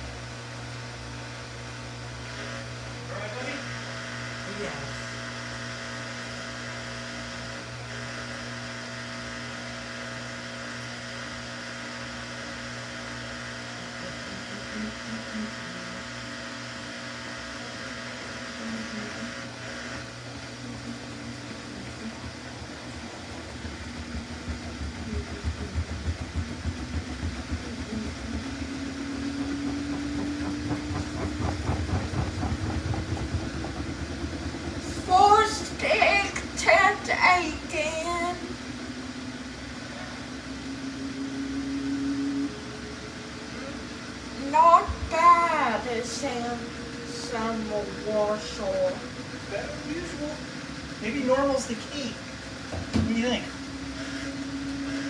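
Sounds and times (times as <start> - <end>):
washing machine motor whine: 0.0 - 55.0
rhythmic swish of turning load: 19.3 - 52.7.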